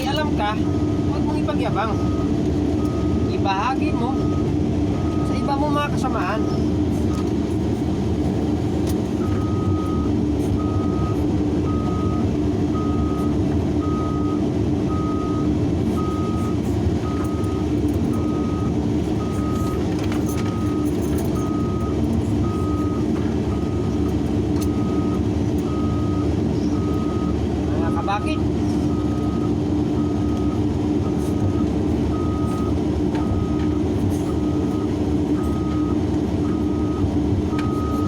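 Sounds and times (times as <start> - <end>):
reversing alarm beeping: 0.0 - 7.3, 9.1 - 38.0
excavator diesel engine running: 0.0 - 38.0.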